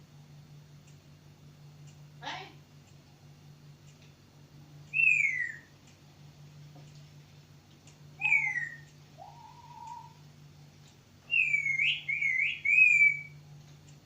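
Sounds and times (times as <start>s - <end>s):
bird whistling: 4.9s - 5.7s, 8.2s - 10.2s, 11.3s - 13.4s.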